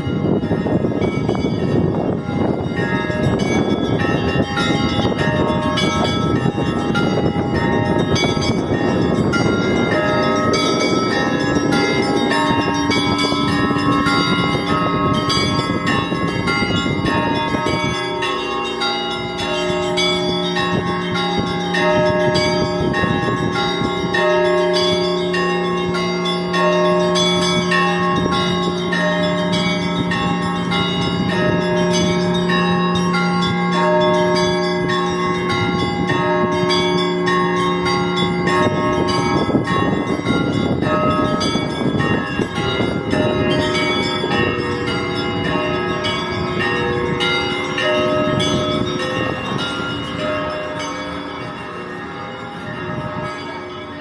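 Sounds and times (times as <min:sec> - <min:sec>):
church bells ringing: 0:00.0 - 0:54.0
deep bell tone: 0:00.0 - 0:54.0.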